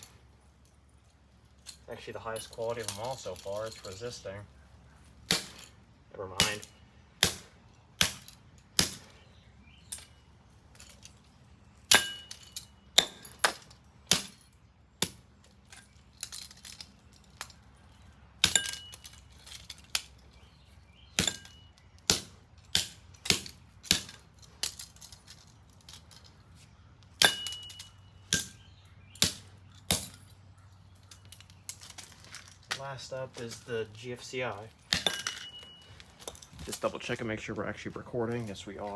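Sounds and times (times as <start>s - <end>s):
axe striking plastic on concrete: 21.2s - 24.2s
high metallic ring: 35.0s - 36.0s.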